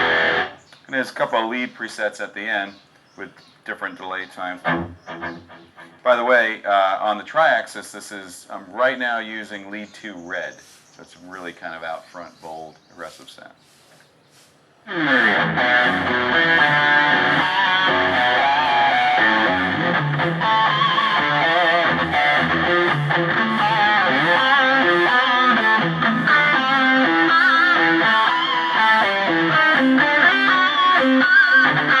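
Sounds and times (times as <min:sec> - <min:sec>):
distorted electric guitar lead: 0:00.0 - 0:00.6, 0:04.6 - 0:06.1, 0:14.9 - 0:32.0.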